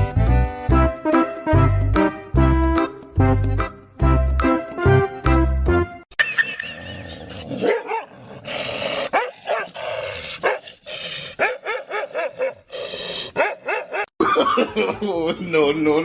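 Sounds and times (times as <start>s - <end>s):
music cue: 0.0s - 6.0s
dog barking: 7.6s - 8.2s, 9.1s - 9.8s, 10.4s - 10.7s, 11.4s - 12.7s, 13.3s - 14.1s.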